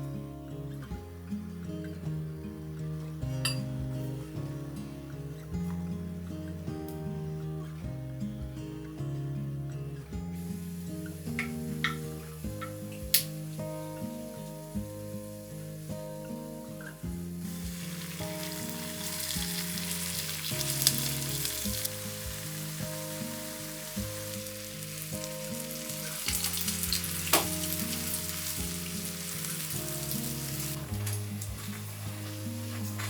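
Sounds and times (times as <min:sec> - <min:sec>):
soft instrumental music: 0:00.0 - 0:33.0
food sizzling in hot oil: 0:10.4 - 0:33.0.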